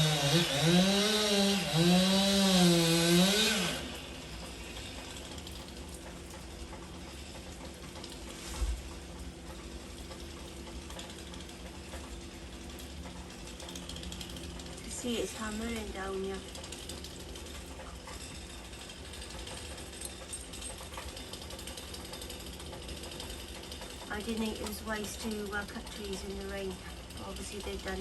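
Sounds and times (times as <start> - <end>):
chainsaw revving and cutting: 0.0 - 5.2.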